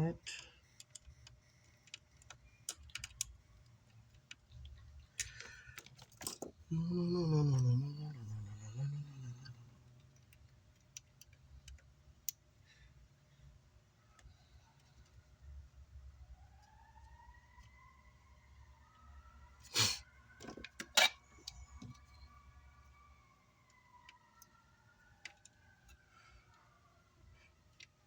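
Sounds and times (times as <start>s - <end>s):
tools clicking and knocking: 5.2s - 6.6s
distant siren wailing: 6.7s - 9.8s, 14.0s - 28.0s.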